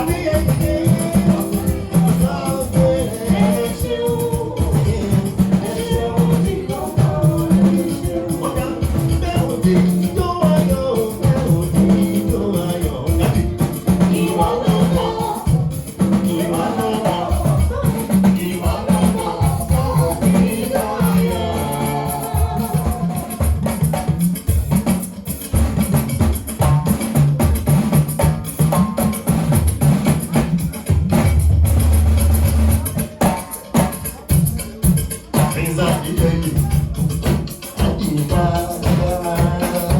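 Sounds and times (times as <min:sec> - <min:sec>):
person singing: 0:00.0 - 0:23.9, 0:35.4 - 0:39.9
bass guitar: 0:00.0 - 0:33.0
drums: 0:00.0 - 0:39.9
percussion: 0:00.0 - 0:39.9.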